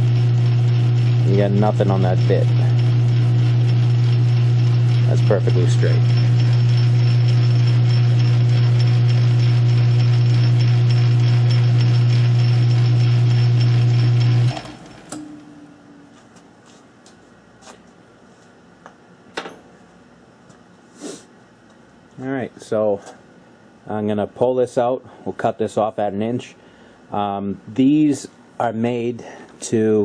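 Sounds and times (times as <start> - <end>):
lathe motor humming: 0.0 - 15.5.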